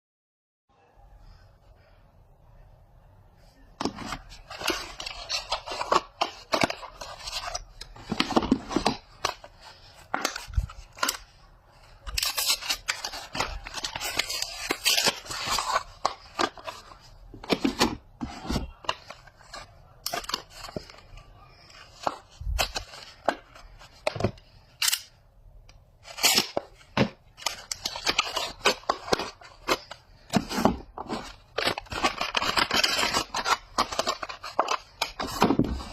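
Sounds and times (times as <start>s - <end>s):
wrapper crinkling and tearing: 12.1s - 16.8s, 26.0s - 26.6s, 31.1s - 35.9s.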